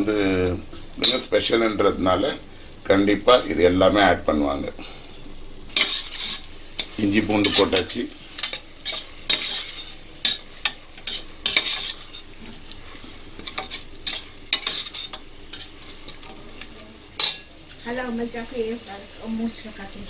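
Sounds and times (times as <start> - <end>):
paste sizzling in a pan: 0.0 - 20.0
spoon scraping and knocking pan: 5.8 - 17.8.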